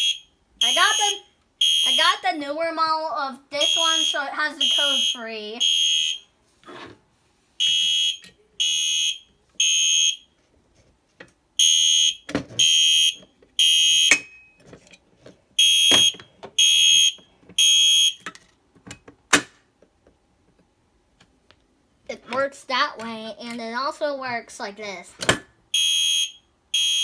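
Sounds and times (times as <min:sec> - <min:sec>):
fire alarm horn blasts: 0:00.0 - 0:02.2, 0:03.6 - 0:06.3, 0:07.6 - 0:10.3, 0:11.6 - 0:14.2, 0:15.6 - 0:18.2, 0:25.7 - 0:27.0.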